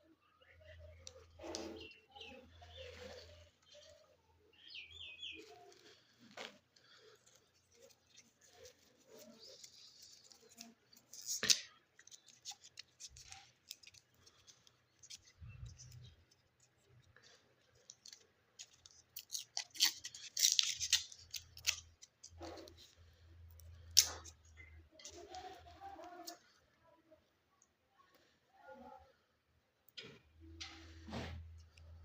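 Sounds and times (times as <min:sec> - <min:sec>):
candy wrappers crinkling: 0:01.1 - 0:26.6.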